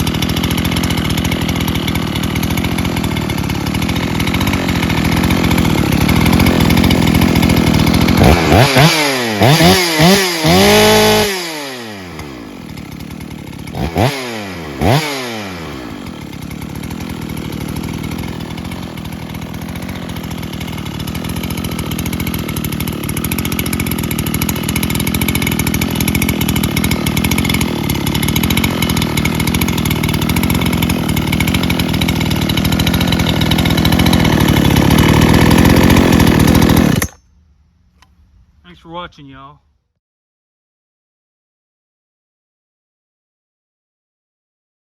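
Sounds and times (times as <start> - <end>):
chainsaw idling and revving: 0.0 - 37.2.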